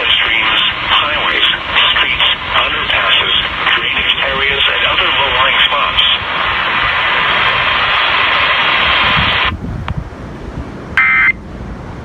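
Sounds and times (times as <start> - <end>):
radio receiver hiss: 0.0 - 9.5.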